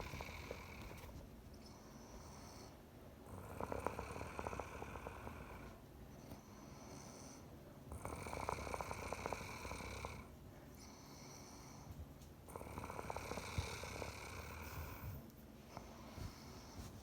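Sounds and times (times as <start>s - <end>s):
woman snoring: 0.0s - 1.1s, 3.3s - 5.7s, 7.9s - 10.3s, 12.5s - 15.0s
soft breathing: 0.0s - 17.0s.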